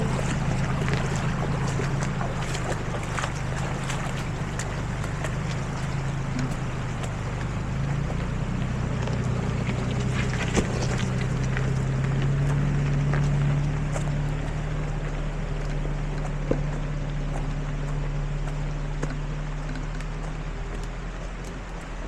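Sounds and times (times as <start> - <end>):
truck engine running at low speed: 0.0 - 22.0.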